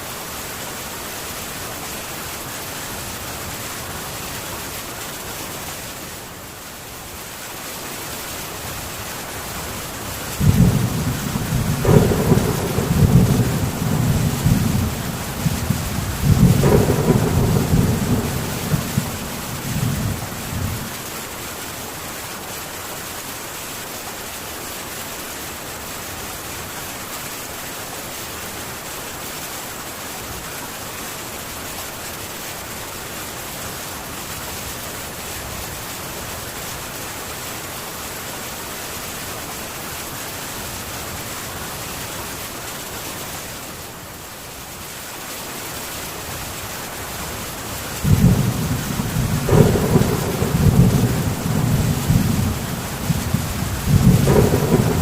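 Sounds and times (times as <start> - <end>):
rain on a tin roof: 0.0 - 55.0
thunder rumbling: 10.3 - 21.0, 48.0 - 55.0.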